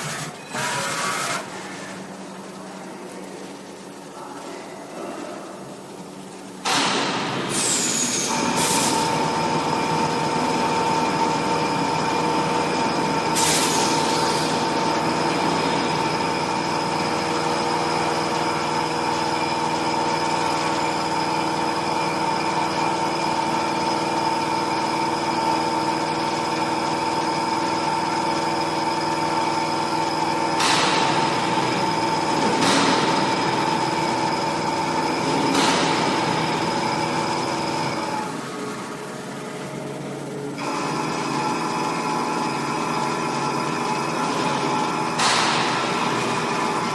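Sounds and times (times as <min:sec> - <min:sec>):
machine whine: 0:00.0 - 0:02.6, 0:06.6 - 0:46.9
short hissing bursts: 0:07.5 - 0:09.0.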